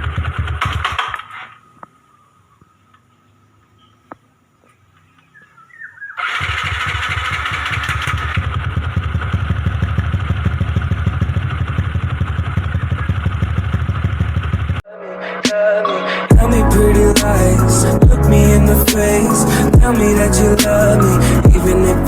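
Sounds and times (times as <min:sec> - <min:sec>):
small motorcycle engine running: 0:00.0 - 0:01.4, 0:06.2 - 0:14.8.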